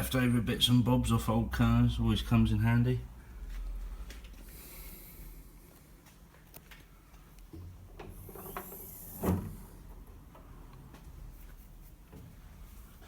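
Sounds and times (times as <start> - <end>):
toolbox drawer sliding: 8.1 - 9.9.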